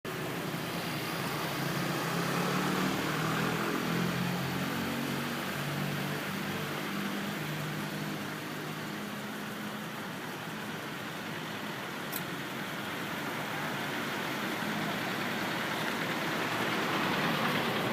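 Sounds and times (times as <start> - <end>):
vehicle engine running: 14.1 - 17.9.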